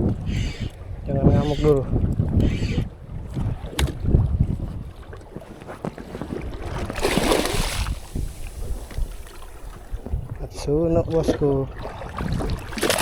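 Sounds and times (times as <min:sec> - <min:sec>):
small boat rumbling on water: 0:00.0 - 0:13.0
wind buffeting microphone: 0:00.0 - 0:13.0
hissing rush: 0:07.7 - 0:09.8.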